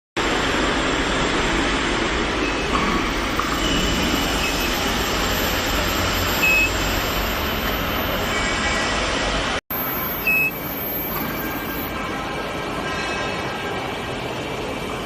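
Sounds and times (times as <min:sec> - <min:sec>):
machinery rumble: 0:00.2 - 0:12.8
faint high whine: 0:02.4 - 0:12.2
faint beeps or squeaks: 0:09.7 - 0:11.9.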